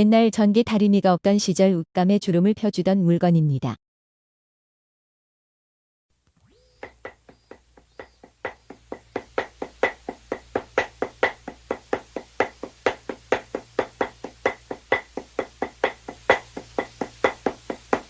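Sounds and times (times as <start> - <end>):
wooden bats beating cloth on stone: 6.7 - 18.0.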